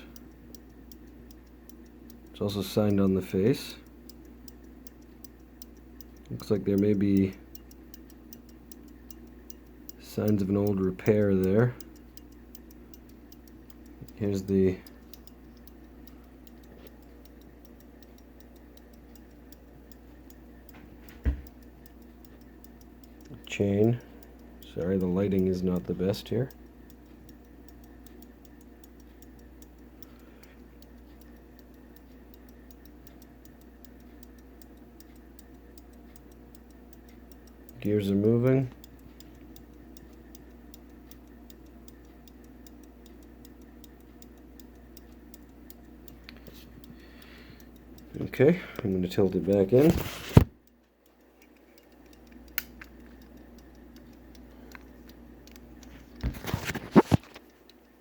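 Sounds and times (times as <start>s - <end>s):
pocket watch ticking: 0.0s - 58.0s.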